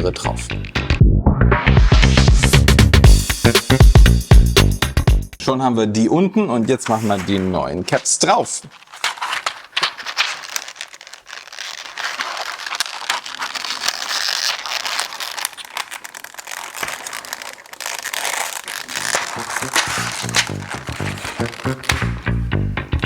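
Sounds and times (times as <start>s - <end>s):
crinkly rustle: 6.5s - 22.2s.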